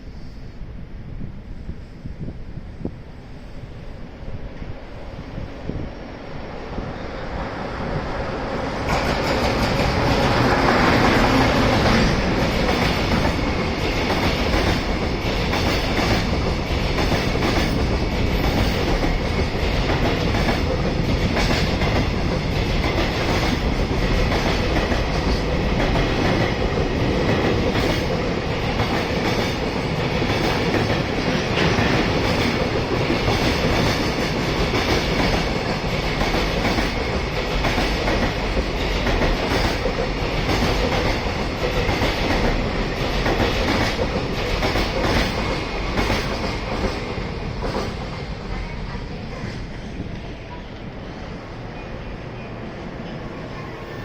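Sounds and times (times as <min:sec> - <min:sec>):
train wheels clattering over rails: 0:08.3 - 0:50.4.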